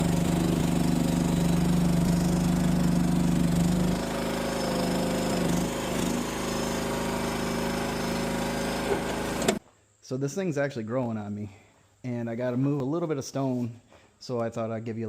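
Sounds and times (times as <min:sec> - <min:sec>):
small gasoline engine running: 0:00.0 - 0:09.6.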